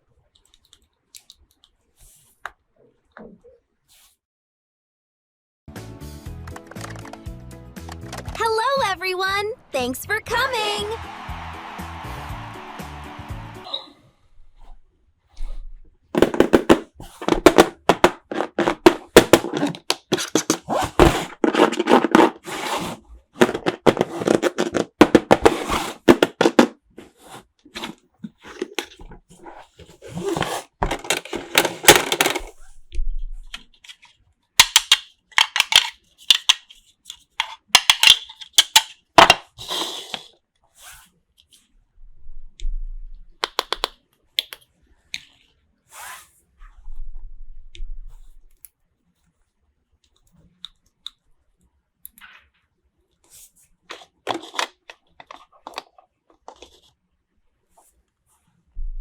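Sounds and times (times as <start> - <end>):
packaging rustling: 16.2 - 26.5
plastic toy pieces clicking: 34.6 - 39.5, 43.4 - 44.6.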